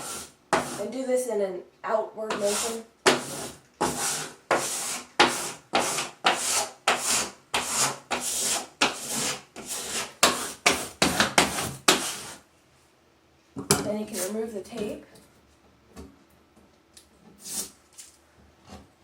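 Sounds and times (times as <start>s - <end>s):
squeegee scraping on wall: 0.0s - 1.0s, 2.3s - 12.4s.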